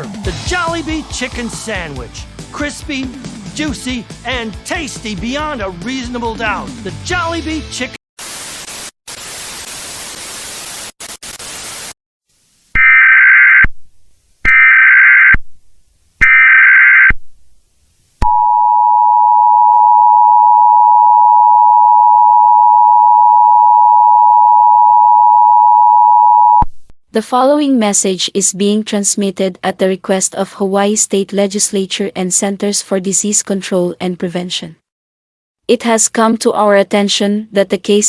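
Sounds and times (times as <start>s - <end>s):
tv static hiss: 8.2s - 12.8s.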